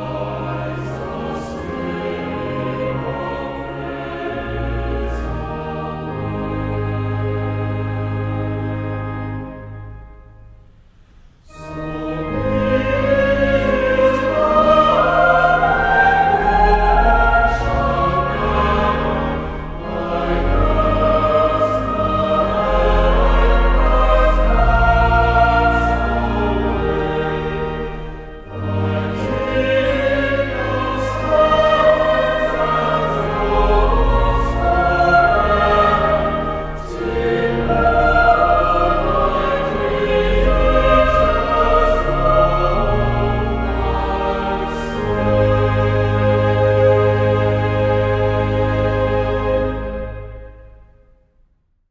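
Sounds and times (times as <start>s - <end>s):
choir singing: 0.0s - 9.9s, 11.4s - 51.1s
low held accompaniment: 0.0s - 51.2s.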